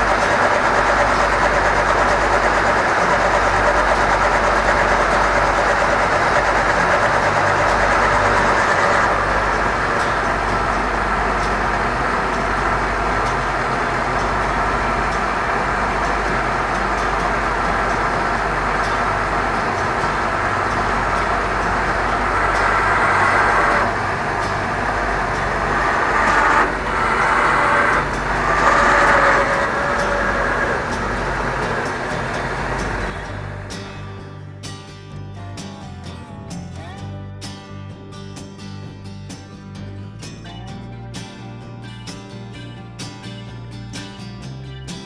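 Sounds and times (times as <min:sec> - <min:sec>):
leveling jacks motor running: 0:00.0 - 0:34.6
low hum: 0:00.0 - 0:44.0.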